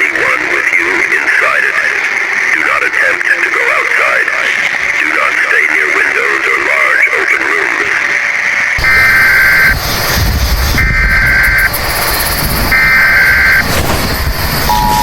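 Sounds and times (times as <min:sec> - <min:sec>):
low noisy rumble: 0:08.1 - 0:15.0
buzzing digital data tones: 0:08.8 - 0:15.0.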